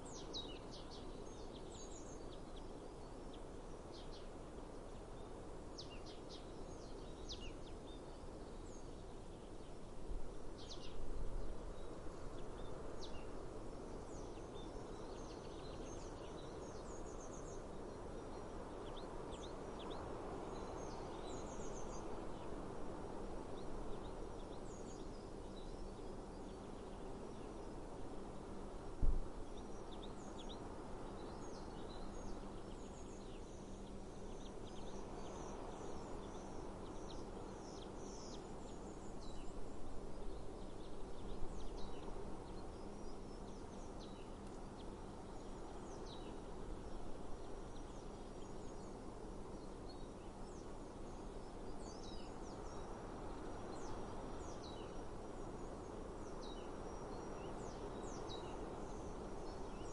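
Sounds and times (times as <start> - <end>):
outdoor breeze: 0.0 - 59.9
small birds chirping: 0.0 - 59.9.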